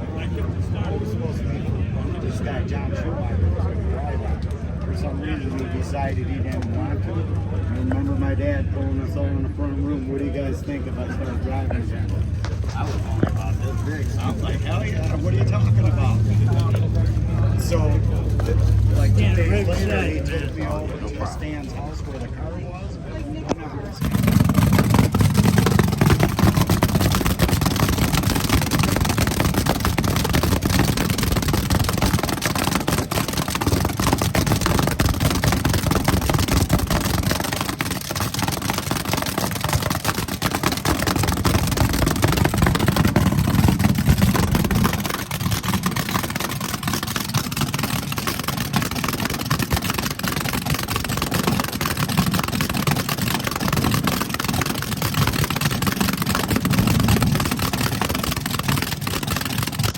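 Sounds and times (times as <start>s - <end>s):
car engine rumbling: 11.8s - 20.9s, 23.9s - 59.9s.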